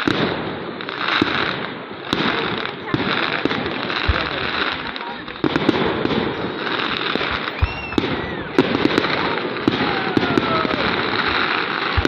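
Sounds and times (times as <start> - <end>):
fireworks crackling: 0.0 - 12.0
whistling fireworks: 0.0 - 12.0
deep firework bang: 1.2 - 12.0.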